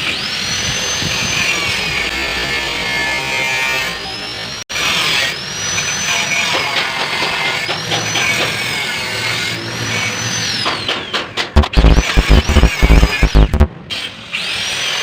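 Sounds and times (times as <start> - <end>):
heavy rhythmic bass thumps: 11.6 - 13.7.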